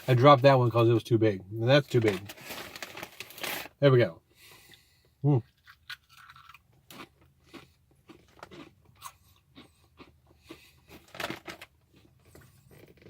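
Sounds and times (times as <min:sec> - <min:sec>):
chewing crunchy chip: 0:05.4 - 0:13.0.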